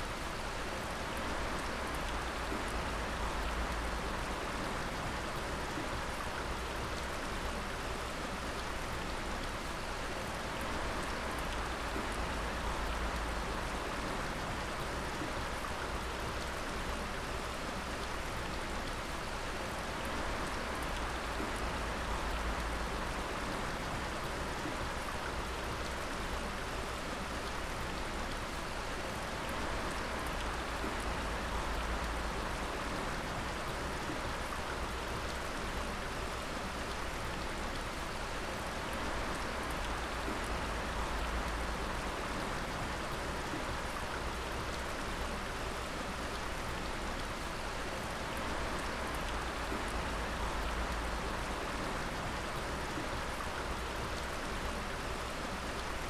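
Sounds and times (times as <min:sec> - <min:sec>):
water dripping: 0:29.5 - 0:56.0.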